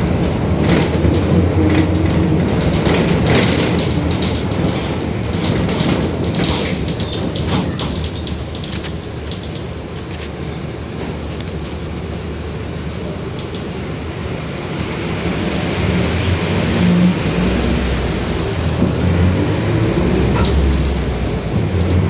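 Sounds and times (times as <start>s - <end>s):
diesel bus running: 0.0s - 22.0s.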